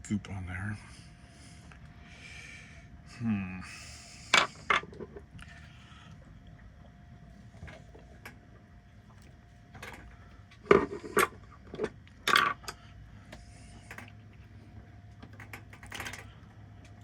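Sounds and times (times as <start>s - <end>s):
tools and parts clicking and knocking: 4.4s - 5.2s, 9.7s - 12.8s, 15.2s - 17.0s.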